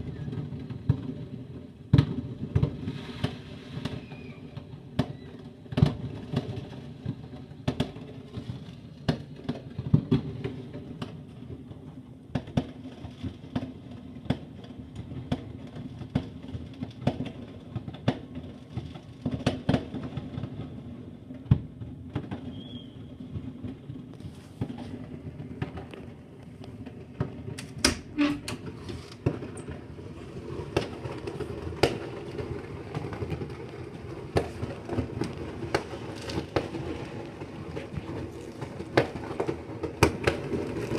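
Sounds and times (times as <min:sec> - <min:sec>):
fireworks bangs and pops: 0:00.0 - 0:40.9.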